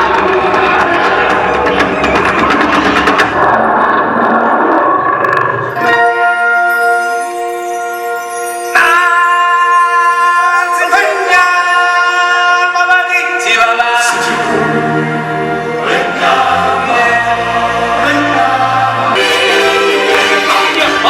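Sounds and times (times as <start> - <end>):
choir singing over held chords: 13.7 - 21.0.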